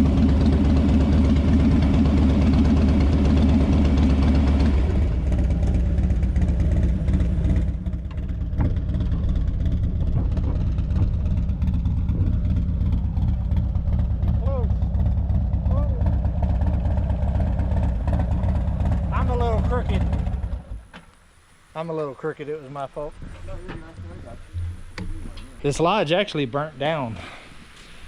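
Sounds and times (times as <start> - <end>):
motorcycle engine running: 0.0 - 20.9.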